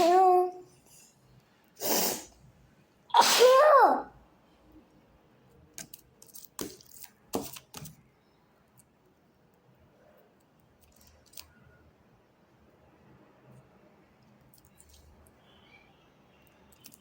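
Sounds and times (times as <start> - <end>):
faint slime handling: 5.7 - 8.0.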